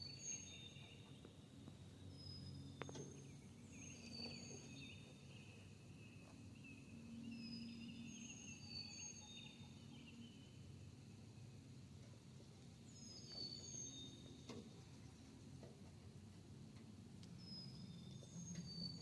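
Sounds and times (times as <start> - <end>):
songbirds chirping and whistling: 0.0 - 1.3, 2.0 - 10.6, 12.9 - 15.4, 17.3 - 19.0.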